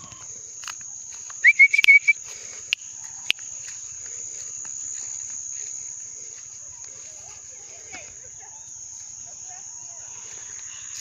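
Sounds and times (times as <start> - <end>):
high-pitched insect chorus: 0.0 - 11.0
sharp clicks: 1.4 - 2.1.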